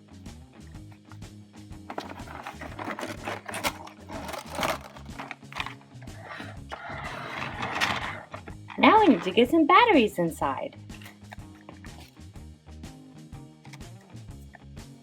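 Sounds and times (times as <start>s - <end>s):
background music: 0.0s - 15.0s
packaging crinkling: 1.9s - 9.3s.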